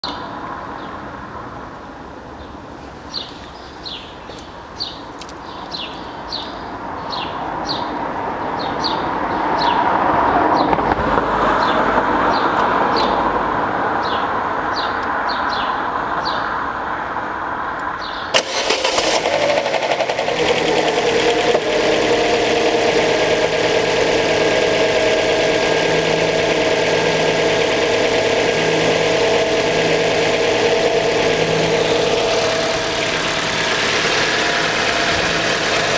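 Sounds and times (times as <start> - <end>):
car engine cold-starting: 18.3 - 35.9
engine idling: 18.4 - 35.9
engine knocking: 18.4 - 35.9.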